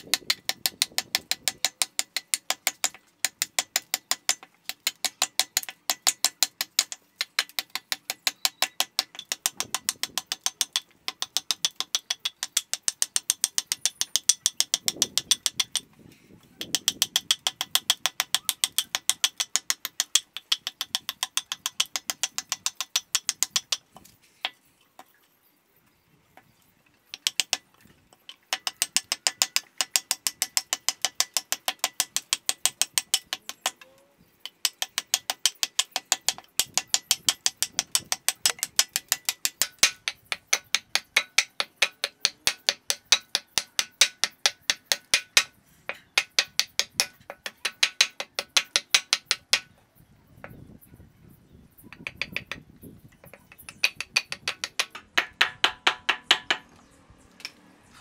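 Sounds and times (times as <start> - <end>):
rapid mechanical clicking: 27.1 - 33.8, 34.4 - 49.7, 51.9 - 56.6.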